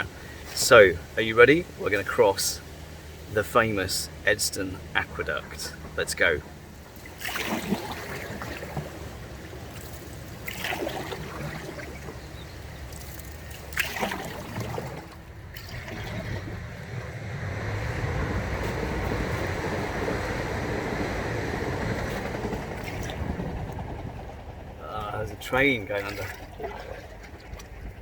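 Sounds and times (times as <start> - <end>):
paddle strokes in water: 4.8 - 24.2, 25.7 - 28.0
wind on microphone: 14.3 - 25.4, 26.8 - 28.0.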